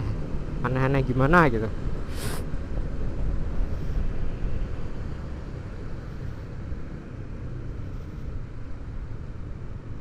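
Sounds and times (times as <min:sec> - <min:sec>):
wind and road noise: 0:00.0 - 0:10.0
short hiss: 0:02.1 - 0:02.5.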